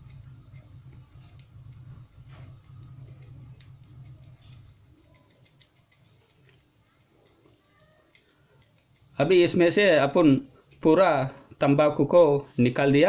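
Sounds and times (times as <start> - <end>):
low hum: 0.0 - 7.1
small clicks and rustles: 0.0 - 9.2.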